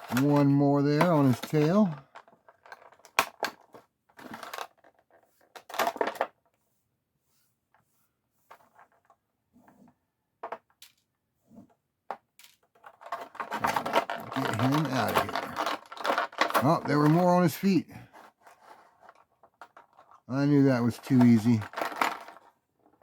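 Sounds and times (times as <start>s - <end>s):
plastic packaging crinkling: 13.5s - 17.6s.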